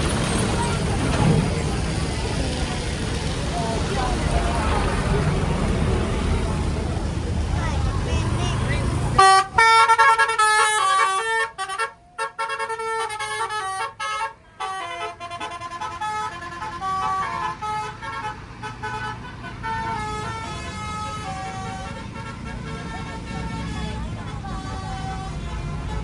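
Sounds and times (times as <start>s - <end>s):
musical bus horn melody: 8.9s - 26.0s.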